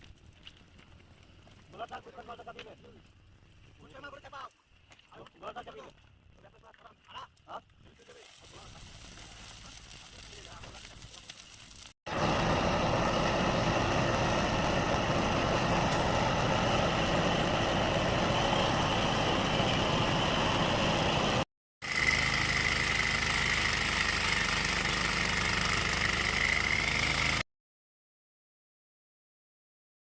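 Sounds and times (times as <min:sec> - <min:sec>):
high whine: 0:12.1 - 0:22.2
engine-driven machine running: 0:12.1 - 0:27.4.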